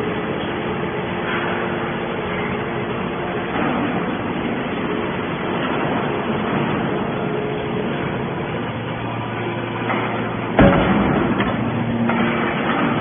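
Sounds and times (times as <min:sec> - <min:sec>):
faint constant hum: 0:00.0 - 0:13.0
scrap-metal baler mechanical din: 0:00.0 - 0:13.0.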